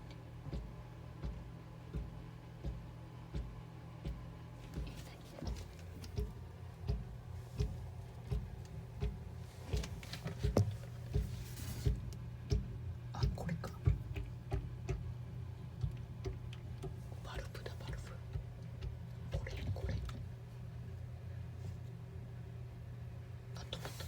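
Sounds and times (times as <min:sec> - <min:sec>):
steady low hum: 0:00.0 - 0:24.0
dull booming thumps: 0:06.2 - 0:12.7.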